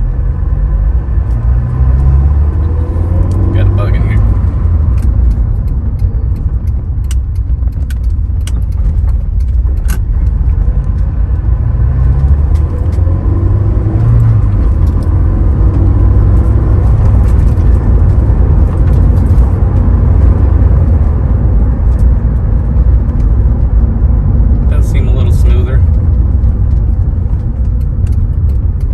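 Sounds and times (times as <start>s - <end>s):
car engine and road noise: 0.0s - 28.9s.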